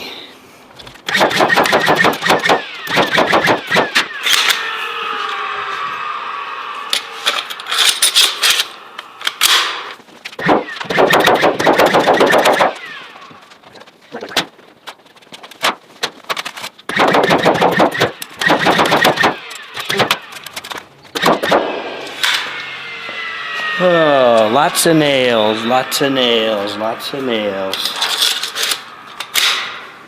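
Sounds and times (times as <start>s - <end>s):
nail gun firing: 1.0s - 4.7s, 9.4s - 9.8s, 10.4s - 13.1s, 15.6s - 22.6s, 27.8s - 29.8s.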